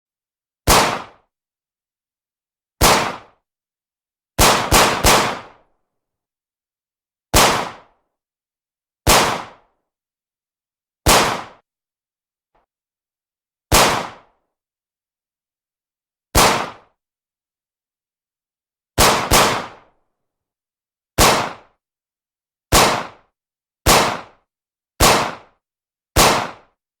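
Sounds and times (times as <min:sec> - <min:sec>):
pistol shots: 0:00.7 - 0:01.2, 0:02.8 - 0:03.3, 0:04.4 - 0:05.6, 0:07.4 - 0:07.9, 0:09.1 - 0:09.6, 0:11.1 - 0:11.6, 0:13.7 - 0:14.2, 0:16.4 - 0:16.8, 0:19.0 - 0:19.8, 0:21.2 - 0:21.6, 0:22.7 - 0:23.2, 0:23.9 - 0:24.3, 0:25.0 - 0:25.5, 0:26.2 - 0:26.6.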